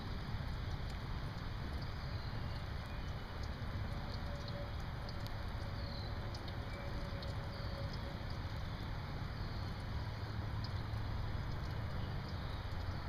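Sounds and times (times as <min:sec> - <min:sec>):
raindrops ticking: 0:00.0 - 0:13.0
steady rain: 0:00.0 - 0:13.0.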